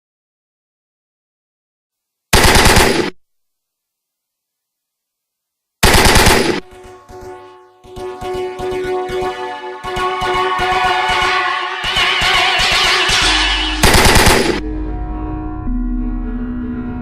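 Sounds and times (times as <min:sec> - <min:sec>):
rapid automatic gunfire: 0:02.4 - 0:03.2, 0:05.8 - 0:06.6, 0:13.8 - 0:14.6
music with pulsing beat: 0:06.7 - 0:14.8.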